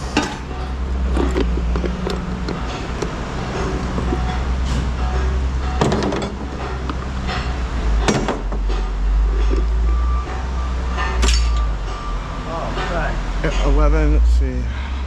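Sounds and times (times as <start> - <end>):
scrap metal clanking: 0.0 - 14.2
engine running: 0.0 - 15.0.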